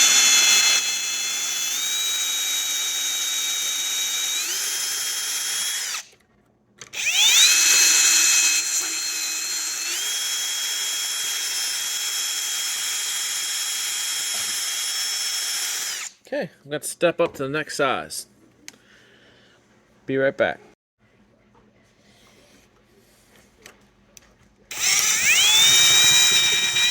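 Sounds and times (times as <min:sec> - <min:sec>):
electric drill whining: 0:00.0 - 0:06.1, 0:06.9 - 0:16.1, 0:24.7 - 0:26.9.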